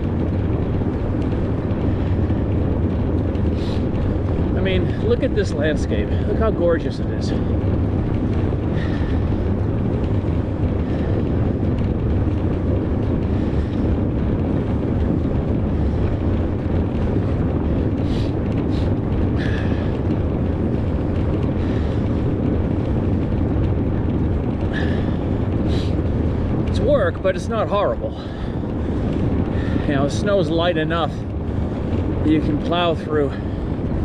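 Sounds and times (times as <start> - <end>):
bike tyres rumbling in snow: 0.0 - 34.0
wind buffeting microphone: 0.0 - 34.0.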